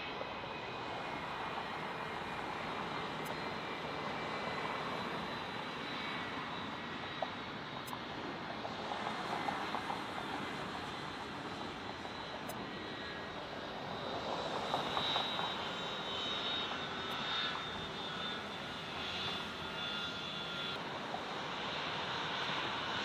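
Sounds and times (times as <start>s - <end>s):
jet engines running: 0.0s - 23.0s.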